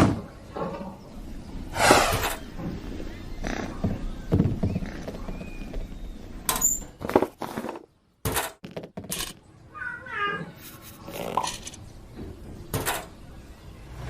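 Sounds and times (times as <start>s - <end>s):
sharp knocks and thuds: 1.8s - 9.3s.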